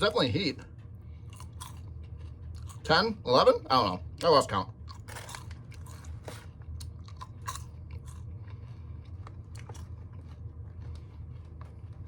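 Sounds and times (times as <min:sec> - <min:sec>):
person chewing popcorn: 0:00.0 - 0:03.2, 0:04.7 - 0:12.0
low hum: 0:00.0 - 0:12.0.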